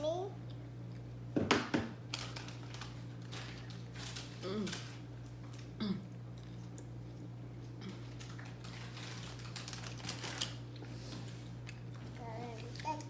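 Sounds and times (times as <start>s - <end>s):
steady low hum: 0.0s - 13.0s
food packaging handling: 2.0s - 5.7s, 7.9s - 11.3s
crunching fried chicken: 7.8s - 10.8s.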